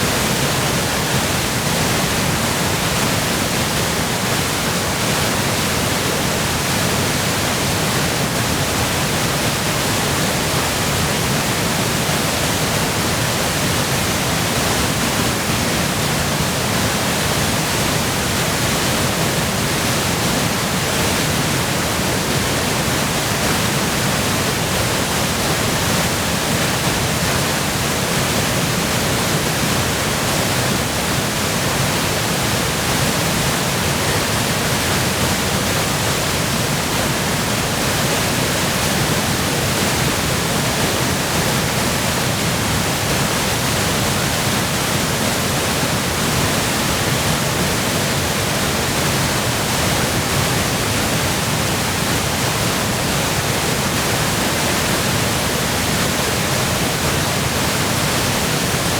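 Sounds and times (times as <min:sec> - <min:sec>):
waterfall rushing: 0:00.0 - 0:58.9.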